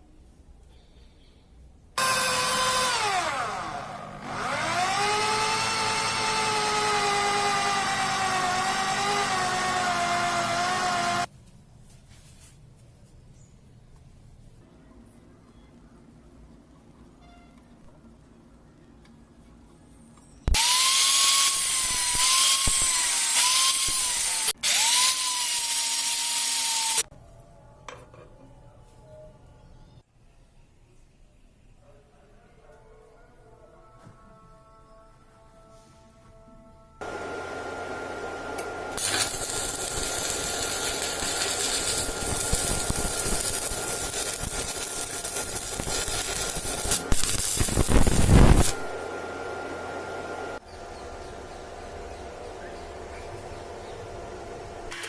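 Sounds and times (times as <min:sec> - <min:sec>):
power tool motor whining: 0:02.0 - 0:11.3, 0:20.5 - 0:27.0, 0:37.0 - 0:50.4.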